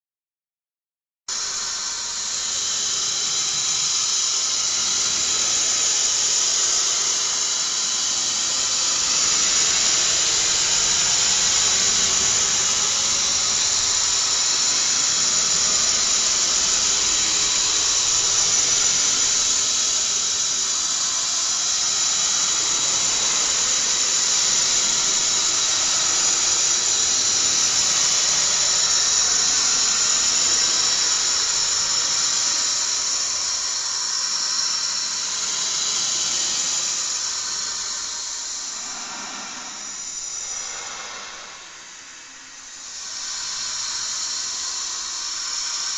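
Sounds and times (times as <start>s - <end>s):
high-pitched squealing hiss: 1.3s - 45.9s.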